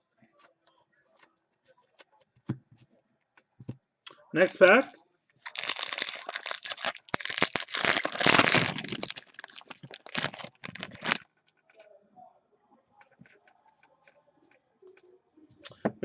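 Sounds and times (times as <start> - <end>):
plastic wrapper crinkling: 5.4 - 11.3.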